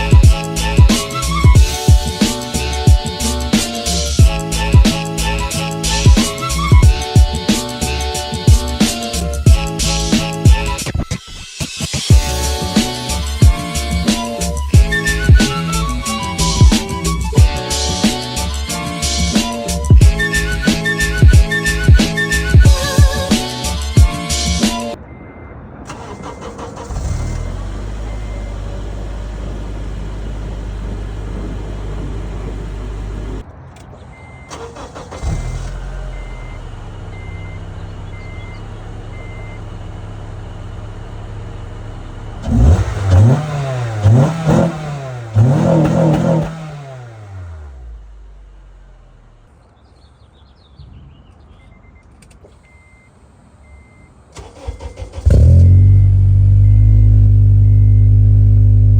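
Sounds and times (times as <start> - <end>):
car engine idling: 0.0 - 10.8, 12.1 - 24.7, 25.9 - 49.5, 54.2 - 58.9
car engine revving: 0.0 - 24.9, 25.9 - 49.5, 54.4 - 58.9
faint repeating beep: 25.0 - 25.7, 34.1 - 34.5, 36.1 - 39.7, 51.6 - 54.2.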